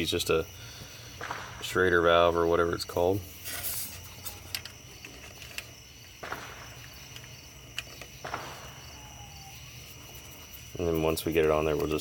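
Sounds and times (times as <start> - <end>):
faint insect chirring: 0.0 - 12.0
soft rustles: 3.3 - 5.7.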